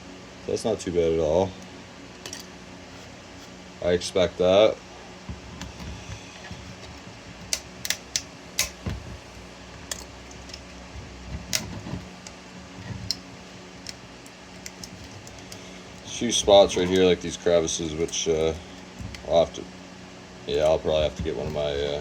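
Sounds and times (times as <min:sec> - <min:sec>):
steady low hum: 0:00.0 - 0:22.0
light rustling and handling: 0:05.2 - 0:19.8, 0:20.5 - 0:22.0
plastic snapping and cracking: 0:06.8 - 0:09.2, 0:11.3 - 0:19.6.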